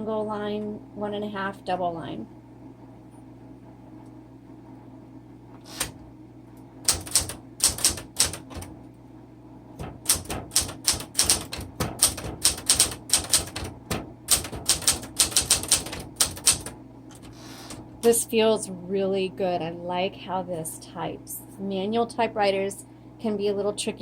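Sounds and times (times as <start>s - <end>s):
manual typewriter typing: 5.7s - 6.0s, 6.9s - 8.7s, 9.8s - 17.8s.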